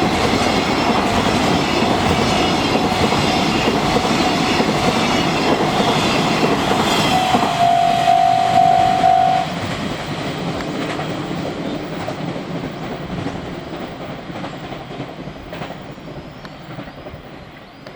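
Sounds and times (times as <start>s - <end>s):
freight wagons clattering over rails: 0.0s - 7.5s
crossing warning bell ringing: 4.4s - 9.7s.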